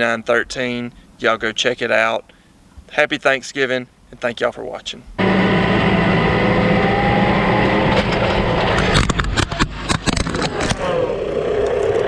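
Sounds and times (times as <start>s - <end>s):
vehicle engine running: 5.2s - 12.0s
knocks and crunches under wheels: 7.8s - 11.0s.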